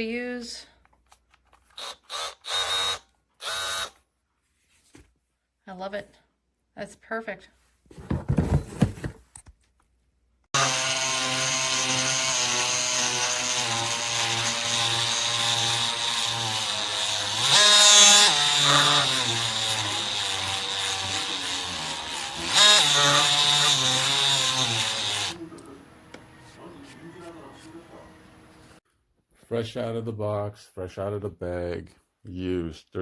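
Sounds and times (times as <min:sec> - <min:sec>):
oscillating multi-tool buzzing: 0:01.8 - 0:04.0, 0:10.6 - 0:25.4.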